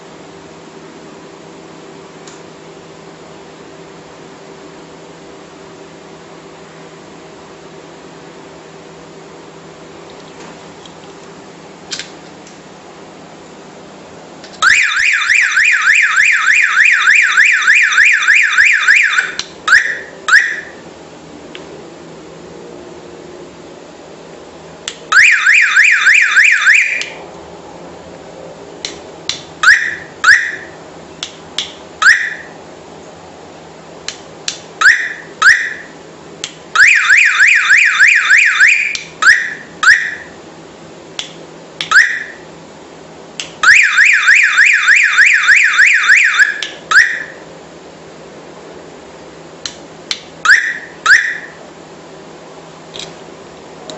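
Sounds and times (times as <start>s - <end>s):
car alarm siren chirps: 14.6s - 20.8s, 25.1s - 27.2s, 29.6s - 30.8s, 32.0s - 32.6s, 34.8s - 36.0s, 36.8s - 40.4s, 41.8s - 42.4s, 43.6s - 47.4s, 50.4s - 51.6s.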